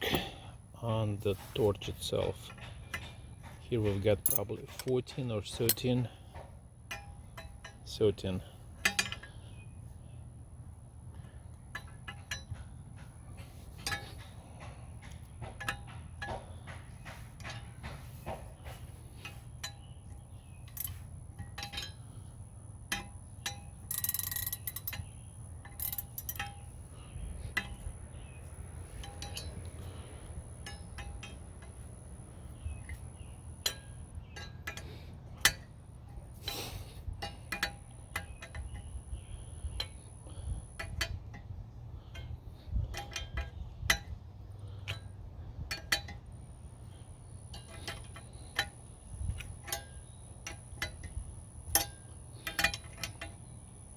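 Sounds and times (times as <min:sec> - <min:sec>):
metal tools clicking and clinking: 0:03.8 - 0:06.2, 0:08.8 - 0:09.4, 0:20.6 - 0:22.2, 0:22.9 - 0:26.7, 0:28.9 - 0:31.8, 0:37.2 - 0:38.9, 0:44.7 - 0:46.3, 0:47.5 - 0:53.9.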